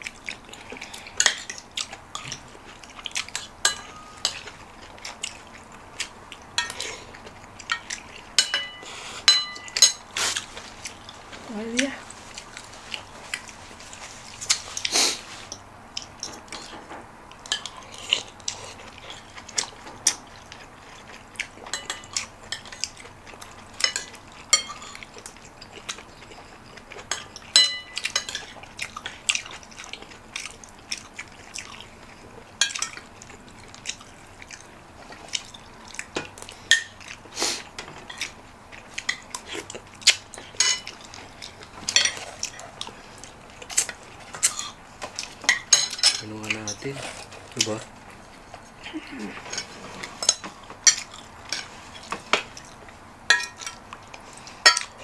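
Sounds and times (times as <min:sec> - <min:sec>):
soft eating sounds: 0:00.0 - 0:55.0
cutlery clinking on dishes: 0:00.7 - 0:01.6, 0:03.2 - 0:05.2, 0:06.6 - 0:11.2, 0:16.2 - 0:26.3, 0:27.0 - 0:29.5, 0:32.6 - 0:33.1, 0:35.2 - 0:37.2, 0:39.0 - 0:42.7, 0:43.8 - 0:47.8, 0:49.3 - 0:53.8, 0:54.6 - 0:55.0.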